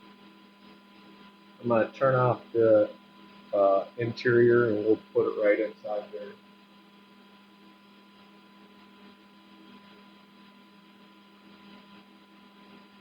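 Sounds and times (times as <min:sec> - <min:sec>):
faint electrical hum: 0:00.0 - 0:13.0
low hiss: 0:00.6 - 0:06.9.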